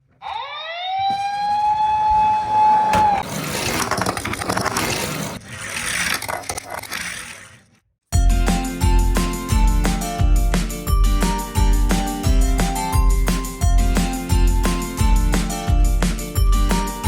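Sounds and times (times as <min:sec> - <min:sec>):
police car siren: 0:00.2 - 0:03.2
toy cars rolling down a slope: 0:03.1 - 0:07.8
music: 0:08.1 - 0:17.0.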